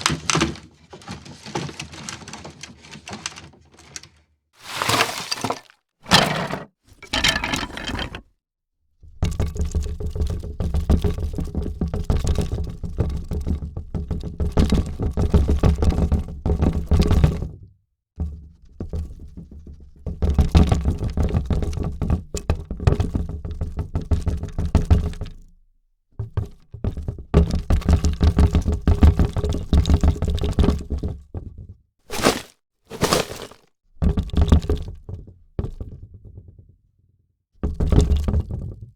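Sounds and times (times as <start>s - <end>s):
rapid clattering and knocking: 4.6s - 8.2s.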